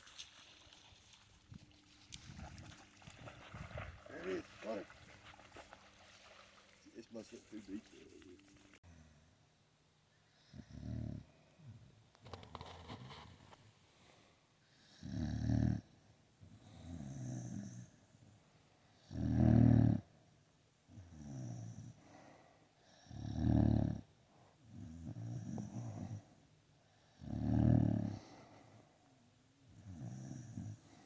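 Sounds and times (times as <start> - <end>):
dog snoring: 10.3 - 13.6, 14.8 - 18.1, 19.0 - 20.2, 20.9 - 28.9, 29.6 - 31.0.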